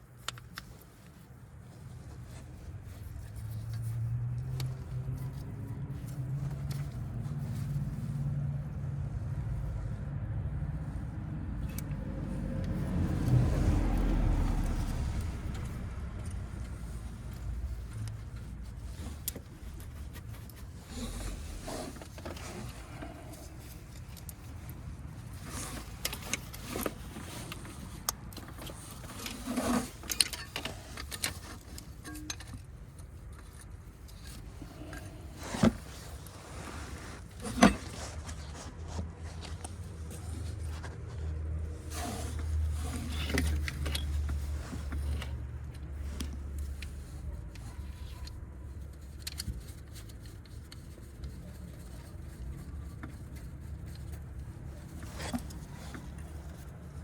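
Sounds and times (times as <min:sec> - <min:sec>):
low steady rumble: 0:00.0 - 0:57.0
metallic clinks and knocks: 0:25.4 - 0:35.9.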